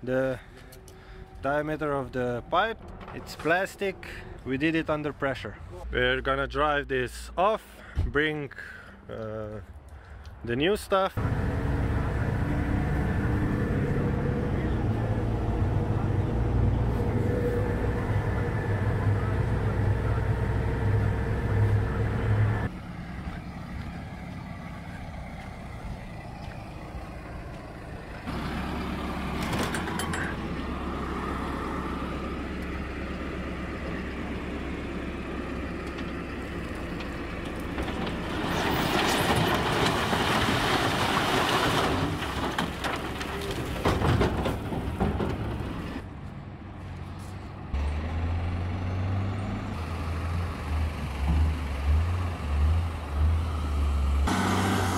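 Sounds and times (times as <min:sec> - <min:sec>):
truck engine idling: 0:11.2 - 0:38.8.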